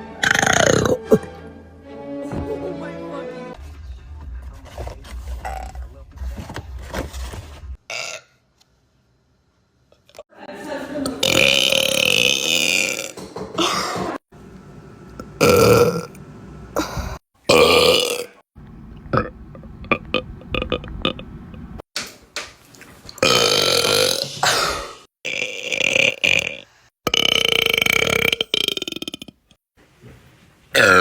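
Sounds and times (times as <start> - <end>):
women belching: 0.2 - 1.2, 11.0 - 14.2, 16.8 - 18.4, 19.1 - 21.2, 23.2 - 29.4.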